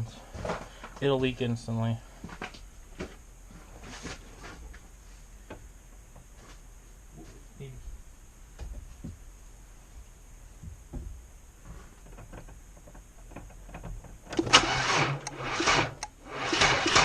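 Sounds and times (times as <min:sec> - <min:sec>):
car engine cranking and starting: 0:13.3 - 0:17.0.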